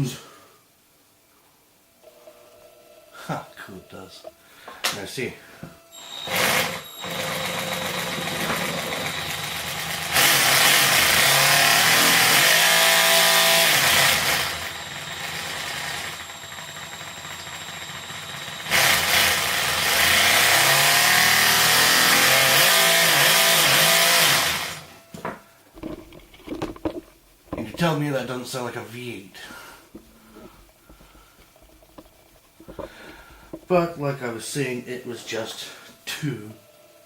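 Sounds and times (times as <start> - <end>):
mechanical pegs and teeth clacking: 25.8 - 28.0, 29.9 - 33.8.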